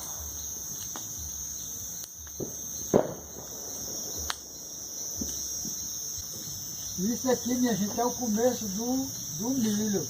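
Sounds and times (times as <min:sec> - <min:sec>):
crickets chirring: 0:00.0 - 0:10.0
sharp pops and knocks: 0:00.8 - 0:01.2, 0:02.0 - 0:06.5.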